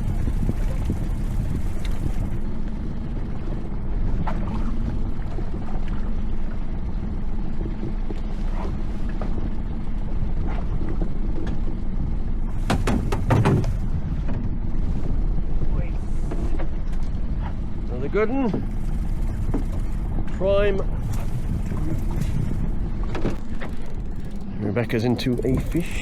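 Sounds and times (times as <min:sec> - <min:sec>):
boat engine rumble and hum: 0:00.0 - 0:26.0
sharp knocks or rattles: 0:12.7 - 0:13.8.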